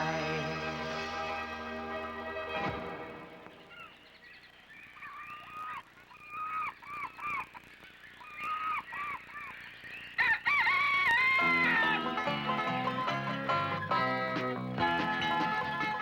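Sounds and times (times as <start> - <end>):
rooster crowing: 10.2 - 12.1.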